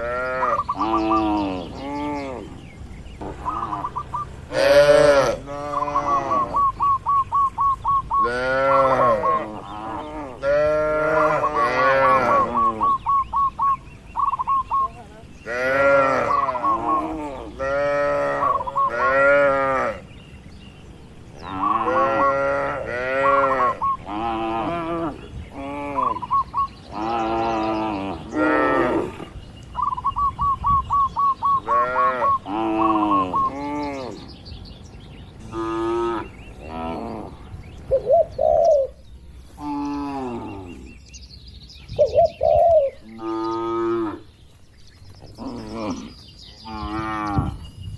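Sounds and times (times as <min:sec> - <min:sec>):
bird chirping: 0:00.0 - 0:22.6, 0:23.6 - 0:24.4, 0:25.1 - 0:47.9
cattle mooing: 0:04.5 - 0:06.8, 0:08.2 - 0:13.0, 0:15.5 - 0:20.0, 0:21.5 - 0:26.2.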